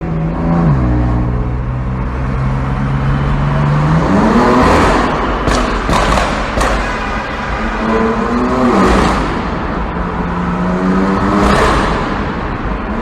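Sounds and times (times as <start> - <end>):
car exhaust revving in a tunnel: 0.0 - 13.0
car accelerating hard: 0.2 - 6.6, 7.8 - 13.0
sharp exhaust cracks: 4.8 - 7.9.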